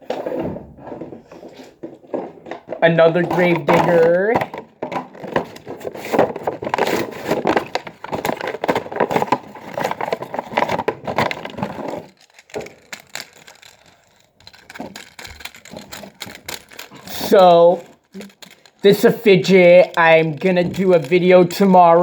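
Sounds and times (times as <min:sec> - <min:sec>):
packaging being torn open: 0:05.9 - 0:19.0
scattered clicks: 0:11.9 - 0:22.0.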